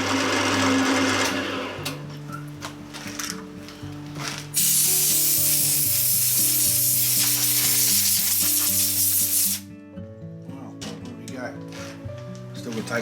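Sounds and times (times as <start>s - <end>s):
background music: 0.0s - 13.0s
loud steady hiss: 4.6s - 9.7s.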